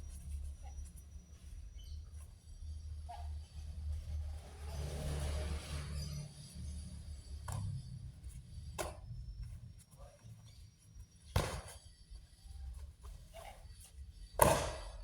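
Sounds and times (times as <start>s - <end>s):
sharp knocks or slaps: 14.4s - 15.0s.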